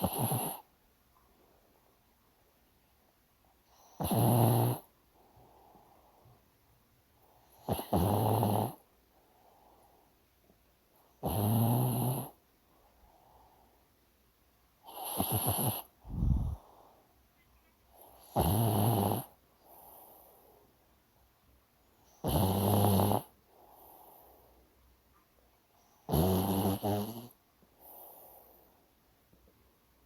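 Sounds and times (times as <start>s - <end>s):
dog snorting: 0.0s - 0.6s, 14.9s - 16.6s, 26.1s - 27.3s
dog snoring: 0.0s - 0.7s, 3.7s - 4.9s, 7.3s - 8.9s, 11.2s - 12.4s, 14.8s - 16.6s, 18.0s - 20.3s, 22.1s - 24.3s, 26.1s - 28.6s.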